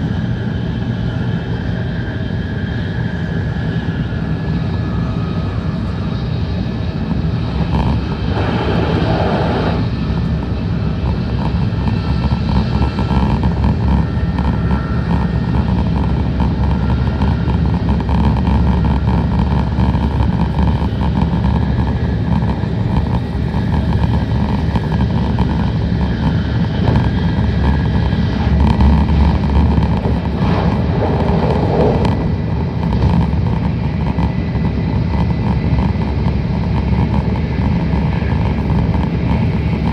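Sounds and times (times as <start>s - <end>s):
train wheels rumbling on rail: 0.0s - 39.9s
rushing noise: 8.0s - 10.0s, 28.6s - 33.6s.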